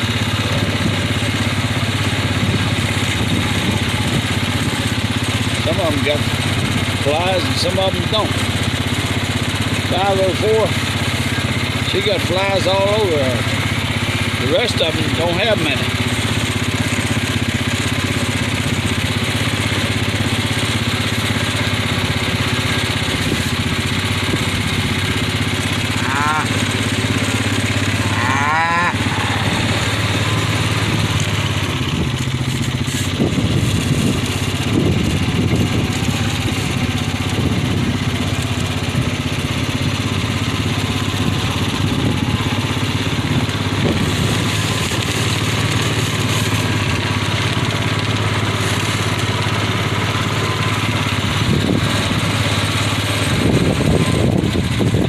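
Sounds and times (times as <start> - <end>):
vehicle engine idling: 0.0 - 55.0
cow mooing: 28.0 - 29.9.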